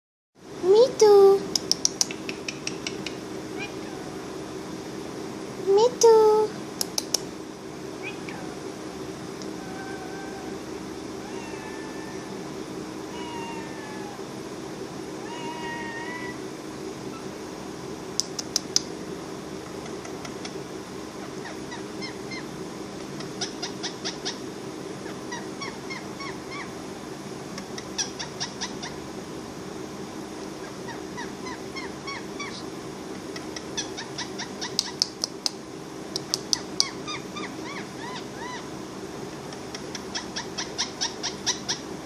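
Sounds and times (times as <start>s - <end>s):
steady low hum: 0.4s - 42.0s
parrot clicking chirps: 1.5s - 3.2s, 6.8s - 7.3s, 18.2s - 18.9s, 33.4s - 35.6s, 36.2s - 37.0s.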